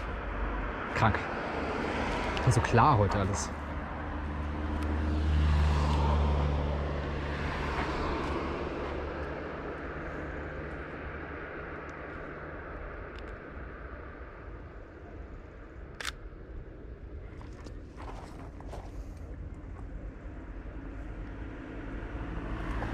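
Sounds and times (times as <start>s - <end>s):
vehicle passing: 0.0s - 14.4s, 19.3s - 22.9s.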